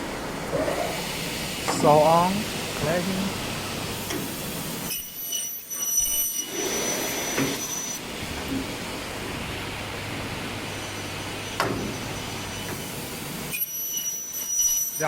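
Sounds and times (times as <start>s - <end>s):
thin high whine: 4.8s - 8.0s, 10.7s - 15.0s.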